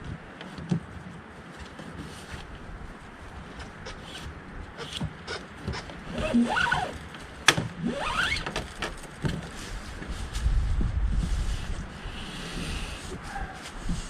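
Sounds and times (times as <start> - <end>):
rising squeaks: 5.3 - 7.1, 7.8 - 8.8.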